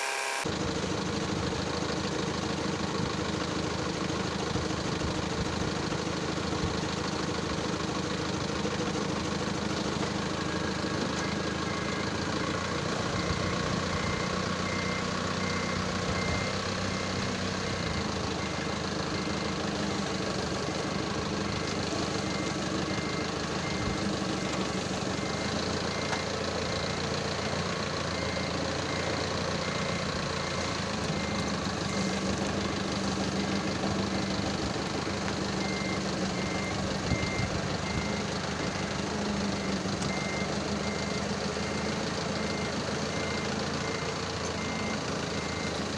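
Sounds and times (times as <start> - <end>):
reversing alarm beeping: 0.0 - 0.5, 10.4 - 34.4, 35.6 - 38.9, 39.5 - 45.9
large vehicle engine running: 0.0 - 45.9.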